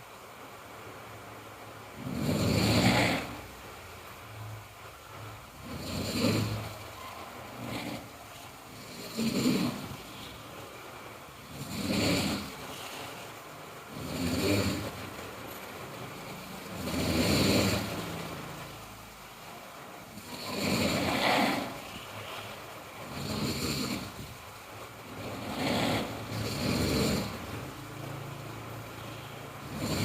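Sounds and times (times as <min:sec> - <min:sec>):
person snoring loudly: 0:02.0 - 0:03.5, 0:05.5 - 0:10.4, 0:11.4 - 0:13.2, 0:13.9 - 0:15.2, 0:16.4 - 0:18.5, 0:20.1 - 0:22.3, 0:23.0 - 0:24.4, 0:25.0 - 0:30.0.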